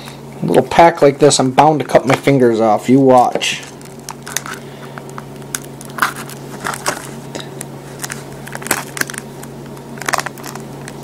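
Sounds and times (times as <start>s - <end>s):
steady low hum: 0.0s - 11.0s
plastic shrink wrap crinkling: 3.3s - 11.0s.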